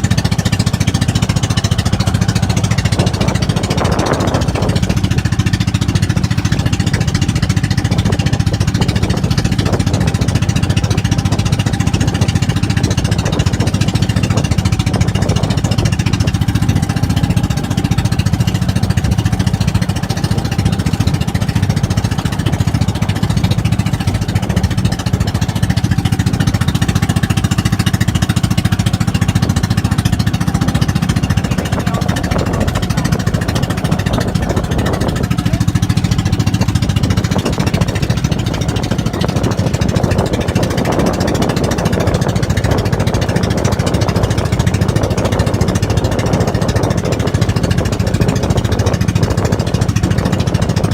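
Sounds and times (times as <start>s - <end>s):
boat engine chugging: 0.0s - 50.9s.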